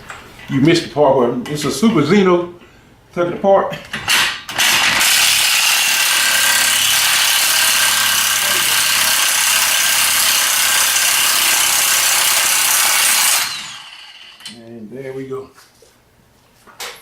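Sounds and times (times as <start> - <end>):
pneumatic wrench running: 4.1 - 14.5.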